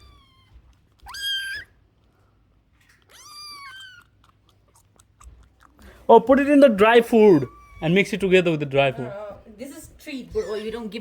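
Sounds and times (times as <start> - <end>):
kittens meowing: 0.0 - 1.8, 2.9 - 5.4, 7.1 - 8.3.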